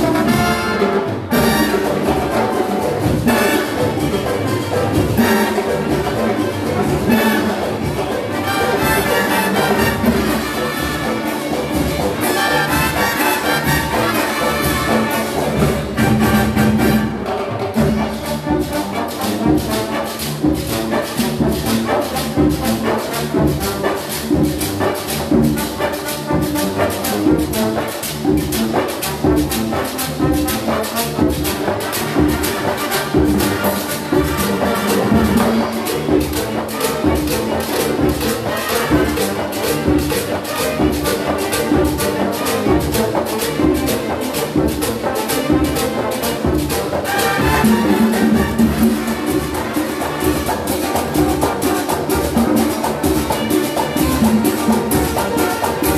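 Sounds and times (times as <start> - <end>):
brass section playing latin music: 0.0 - 55.9
fast percussion beat: 0.0 - 55.9.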